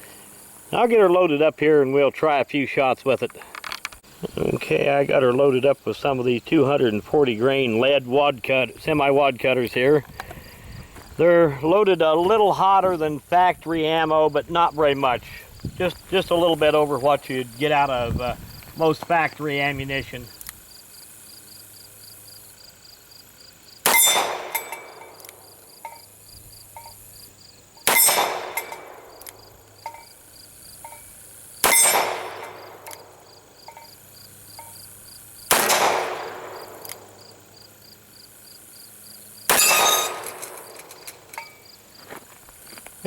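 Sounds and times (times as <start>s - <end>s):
crickets chirping: 0.0s - 43.0s
revolver gunshots: 23.8s - 25.4s, 27.8s - 29.4s, 31.6s - 33.2s, 35.5s - 37.2s, 39.5s - 41.3s.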